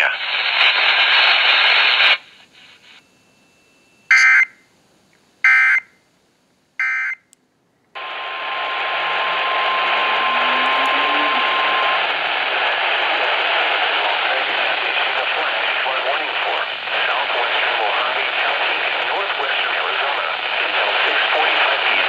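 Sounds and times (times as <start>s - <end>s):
radio static hiss: 0.0s - 3.1s, 8.0s - 22.0s
faint steady tone: 2.8s - 4.8s.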